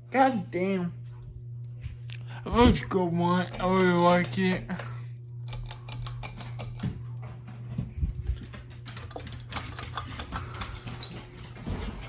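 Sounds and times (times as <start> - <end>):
steady low hum: 0.0 - 12.0
dog tags jingling and claws clicking: 3.5 - 6.9, 8.9 - 11.6.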